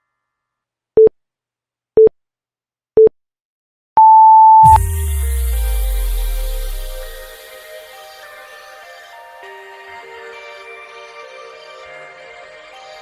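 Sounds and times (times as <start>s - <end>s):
timer beeps: 4.0s - 5.0s
electronic music with deep bass: 4.6s - 7.5s.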